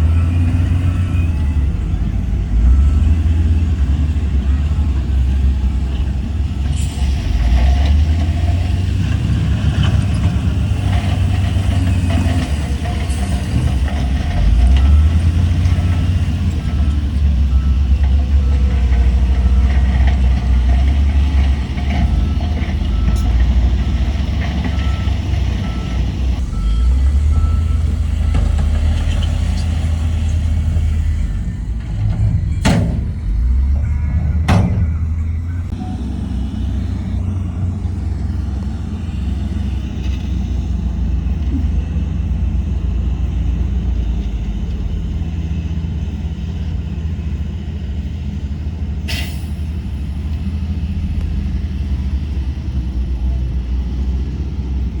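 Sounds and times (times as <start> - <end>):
reversing beeper: 0.0 - 7.4, 21.9 - 37.7
diesel machinery rumbling: 0.0 - 55.0.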